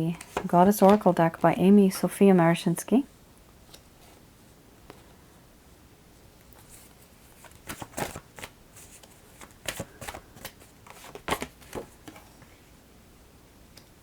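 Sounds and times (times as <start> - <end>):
cards being shuffled: 6.6 - 12.3.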